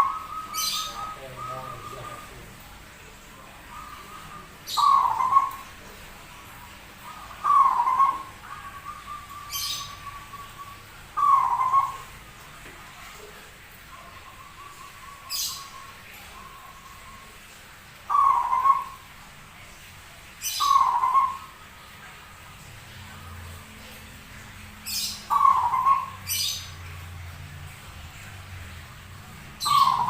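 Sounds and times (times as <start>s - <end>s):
dove cooing: 0.0s - 12.2s, 18.1s - 19.1s, 20.4s - 21.6s, 24.9s - 26.8s, 29.5s - 30.0s.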